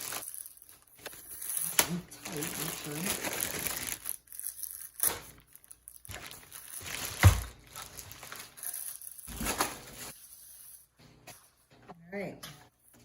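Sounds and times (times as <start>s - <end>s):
packaging rustling and crinkling: 0.0s - 10.3s.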